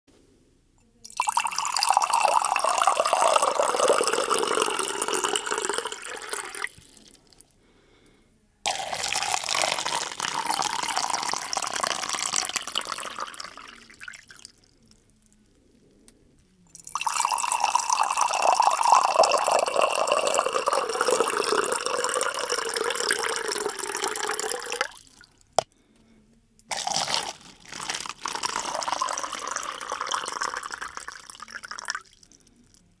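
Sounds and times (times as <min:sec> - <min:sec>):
water pouring and splashing: 0:01.1 - 0:07.2, 0:08.7 - 0:14.6, 0:26.7 - 0:32.0.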